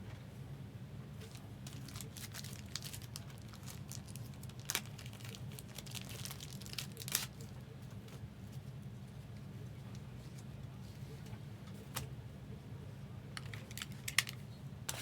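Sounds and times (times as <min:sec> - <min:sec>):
card wrappers crinkling and tearing: 0:01.2 - 0:07.5, 0:13.4 - 0:14.4.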